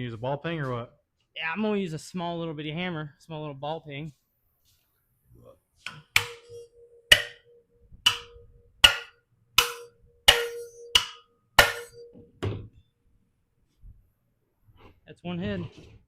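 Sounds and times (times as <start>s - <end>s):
hammer tapping metal: 5.9s - 12.3s
valve spring ringing: 5.9s - 12.4s.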